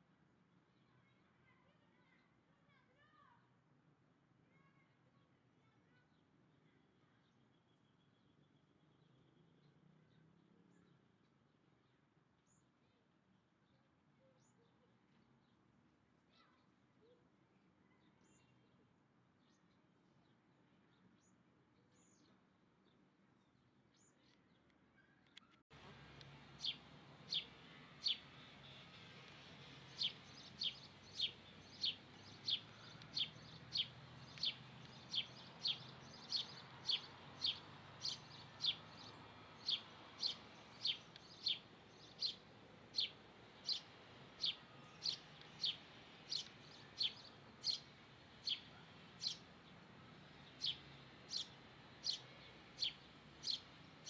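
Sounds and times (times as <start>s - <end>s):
bird chipping: 25.9s - 54.0s.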